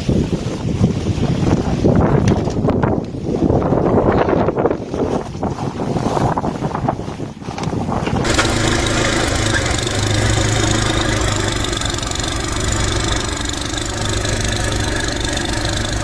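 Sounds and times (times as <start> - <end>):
wind on microphone: 0.0 - 16.0
engine idling: 8.2 - 16.0.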